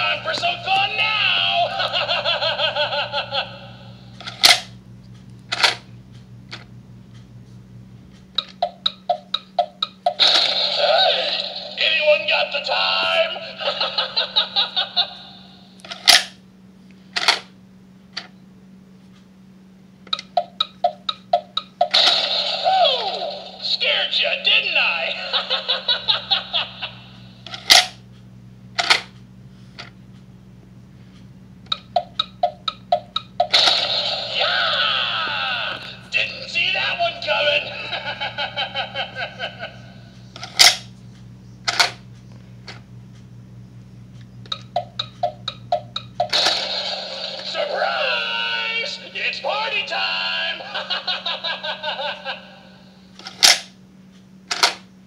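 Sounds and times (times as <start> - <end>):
low steady hum: 0.0 - 55.0
toy laughter from small speaker: 1.5 - 4.0, 13.2 - 15.7, 25.0 - 27.4, 36.8 - 40.1, 50.2 - 53.0
alarm clock clicks: 4.2 - 4.7, 5.5 - 5.8, 8.2 - 10.5, 15.8 - 16.4, 20.1 - 22.3, 27.5 - 28.0, 31.7 - 34.4, 40.4 - 40.9, 44.4 - 47.6, 53.2 - 53.7
rhythmic pulsing: 44.5 - 53.1.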